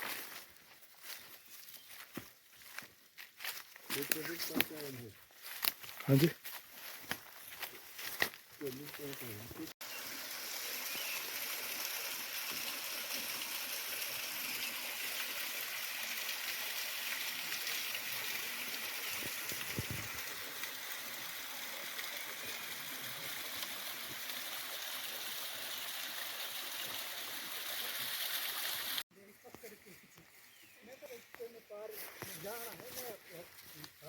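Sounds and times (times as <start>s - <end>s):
stream rushing over rocks: 9.8s - 29.0s.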